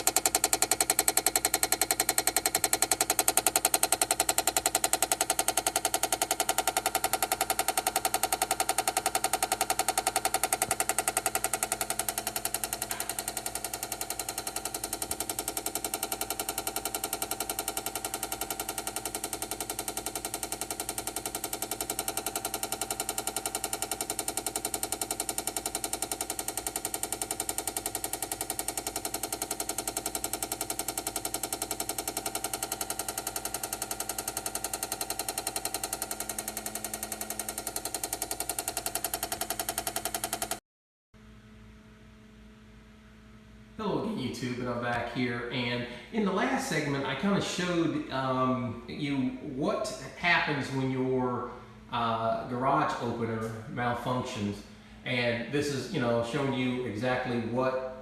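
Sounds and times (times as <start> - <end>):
garage door opener hum: 0.0 - 40.6
garage door opener rapid clicking: 0.0 - 40.6.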